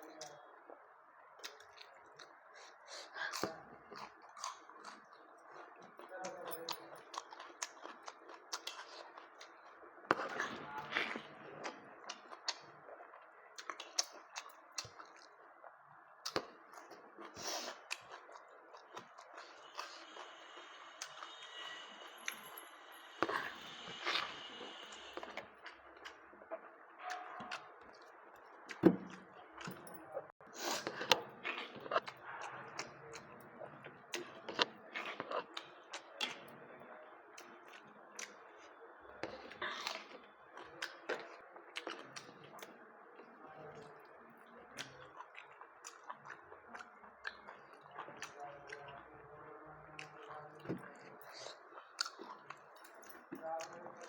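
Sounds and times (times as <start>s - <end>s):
chewing clicks and smacks: 1.4s - 15.4s, 16.2s - 22.4s, 30.6s - 33.4s, 34.1s - 36.6s, 37.4s - 38.6s, 39.2s - 49.1s, 50.0s - 54.0s.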